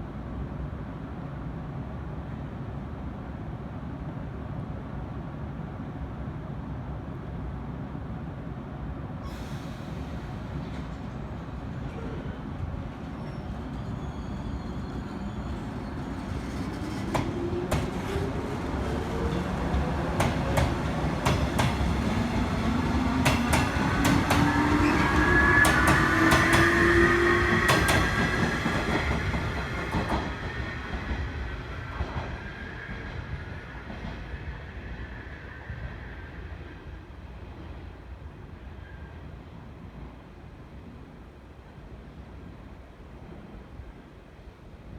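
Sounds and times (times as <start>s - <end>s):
jet-like train noise: 0.0s - 44.9s
rail joint clicks: 9.2s - 31.3s.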